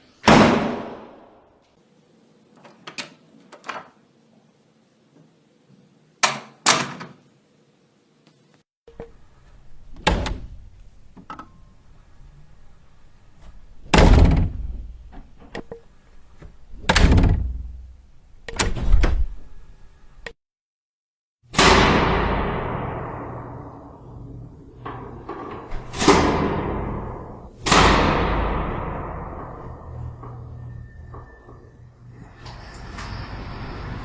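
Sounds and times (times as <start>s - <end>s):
door slamming: 9.0s - 19.7s, 24.7s - 31.6s.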